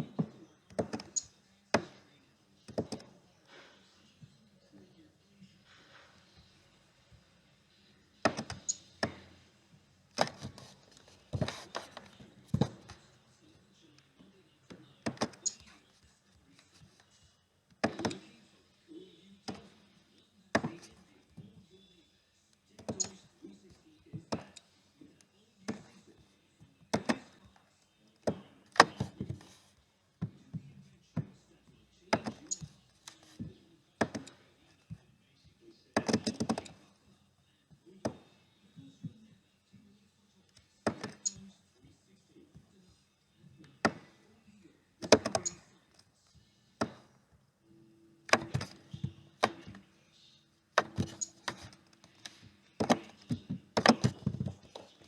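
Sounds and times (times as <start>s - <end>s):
clicks and knocks of hard objects: 50.8s - 55.0s.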